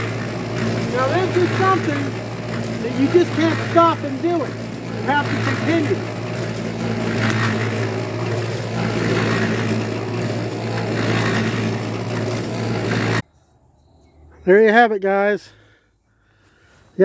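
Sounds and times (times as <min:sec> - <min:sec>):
cement mixer humming: 0:00.0 - 0:13.2.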